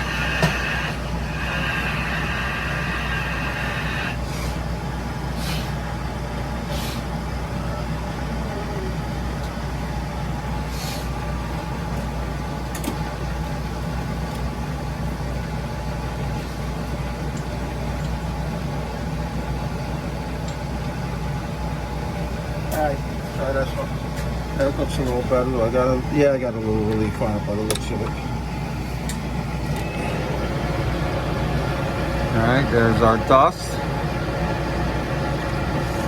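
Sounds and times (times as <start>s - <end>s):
metal lathe running: 0.0s - 4.2s, 28.3s - 36.0s.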